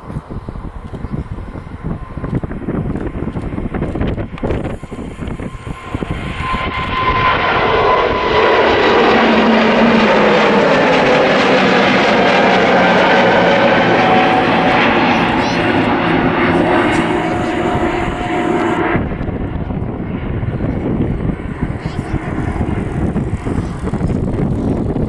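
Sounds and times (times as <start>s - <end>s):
gusty wind on microphone: 0.0s - 25.0s
jet engines roaring: 0.0s - 25.0s.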